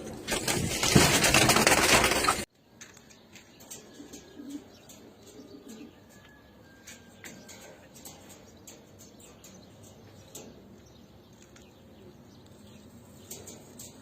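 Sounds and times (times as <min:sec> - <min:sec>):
pigeon wings fluttering: 0:00.0 - 0:02.5
pigeon cooing: 0:03.7 - 0:06.3.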